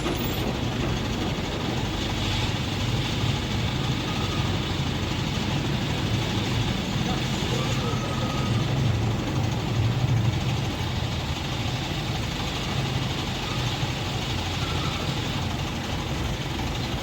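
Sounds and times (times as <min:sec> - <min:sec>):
diesel crane engine running: 0:00.0 - 0:17.0.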